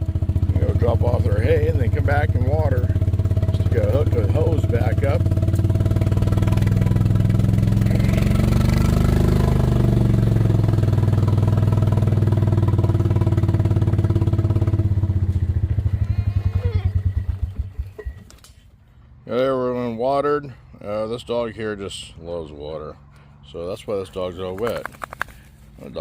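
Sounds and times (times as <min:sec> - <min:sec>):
small vehicle engine running: 0:00.0 - 0:18.3.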